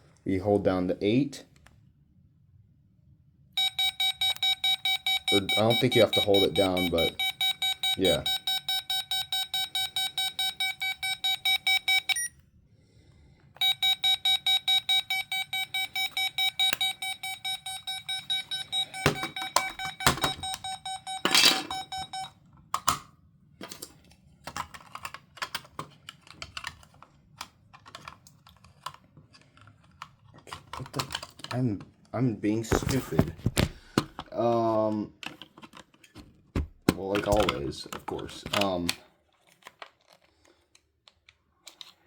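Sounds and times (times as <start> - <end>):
rapid alert beeping: 3.6 - 12.3, 13.6 - 22.3.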